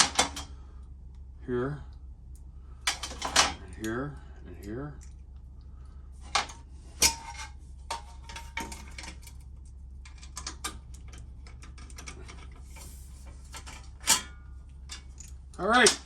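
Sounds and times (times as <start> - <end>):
steady low hum: 0.0 - 16.0
metal tools clinking: 2.9 - 3.9, 6.3 - 16.0.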